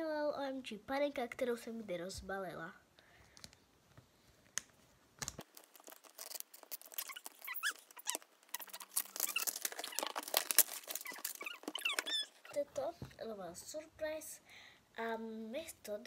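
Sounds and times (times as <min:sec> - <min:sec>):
packaging clicks and rustles: 0:04.4 - 0:12.6
short squeaks: 0:05.9 - 0:12.6.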